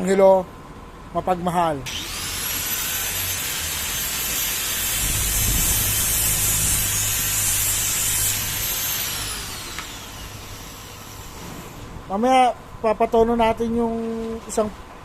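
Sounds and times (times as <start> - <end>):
electric grinder whining: 1.9 - 11.5.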